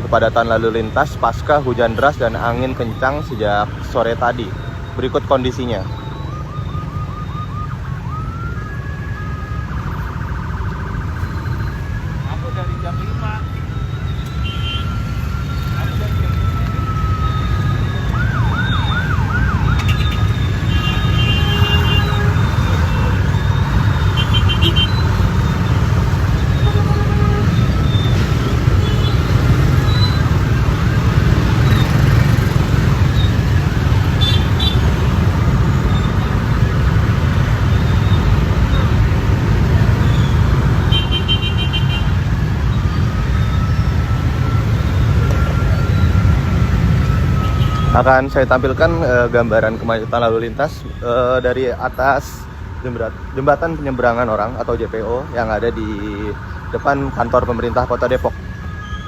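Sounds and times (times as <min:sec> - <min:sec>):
siren wailing: 0:00.0 - 0:59.0
traffic engine rumble: 0:00.0 - 0:59.0
car horn beeps: 0:19.8 - 0:25.3, 0:26.4 - 0:28.2.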